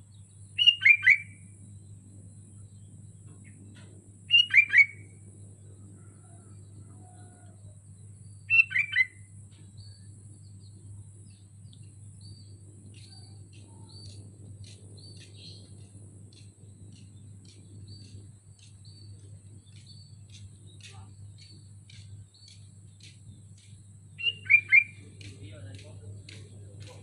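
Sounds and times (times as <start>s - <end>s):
short high bird chirps: 0.6s - 1.4s, 4.3s - 5.1s, 8.5s - 9.2s, 24.2s - 25.0s
bird calling: 0.6s - 1.5s, 3.3s - 5.2s, 8.4s - 10.1s, 11.3s - 27.0s.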